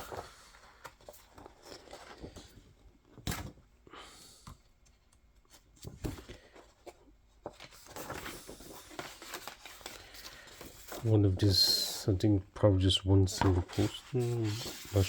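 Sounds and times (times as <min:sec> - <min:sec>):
paper poster rustling: 0:05.5 - 0:15.0.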